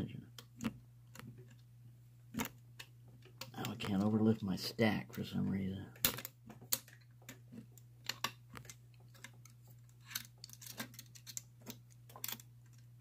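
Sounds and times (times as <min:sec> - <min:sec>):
metal clicks and scrapes in lock: 0:06.0 - 0:12.9.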